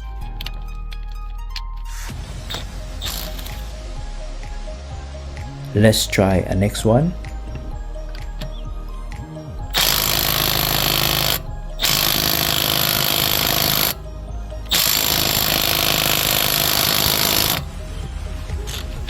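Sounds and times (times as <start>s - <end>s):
impact wrench hammering: 2.5s - 3.6s, 9.6s - 14.1s, 14.7s - 17.7s, 18.5s - 19.0s.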